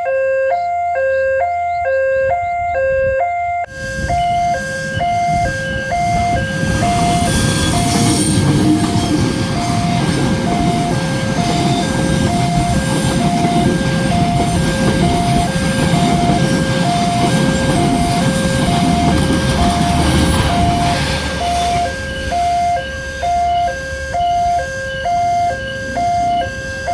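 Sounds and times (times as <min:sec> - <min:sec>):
level crossing two-tone alarm: 0:00.0 - 0:26.9
train rolling slowly: 0:03.6 - 0:26.9.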